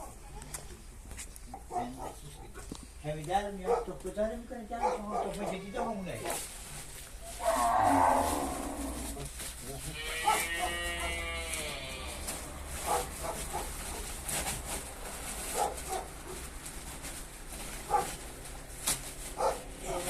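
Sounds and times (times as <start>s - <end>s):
livestock calling: 7.2s - 9.3s, 9.9s - 13.7s.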